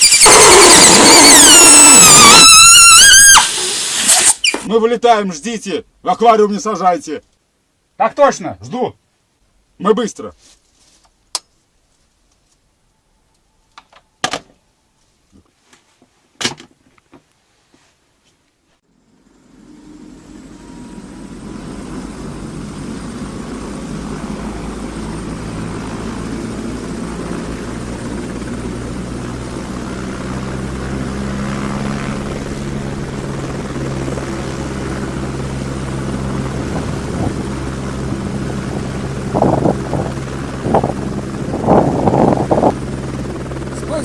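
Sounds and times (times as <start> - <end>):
helicopter rotor and engine drone: 0.0 - 4.3, 19.0 - 44.0.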